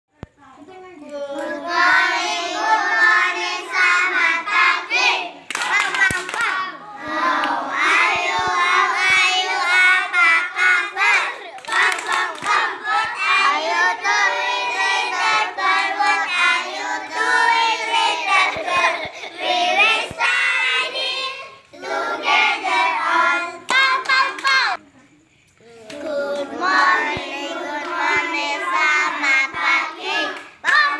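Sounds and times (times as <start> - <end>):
children singing: 1.1 - 24.8, 25.6 - 30.9
hand clapping: 5.5 - 6.6, 11.0 - 13.2, 23.7 - 24.7.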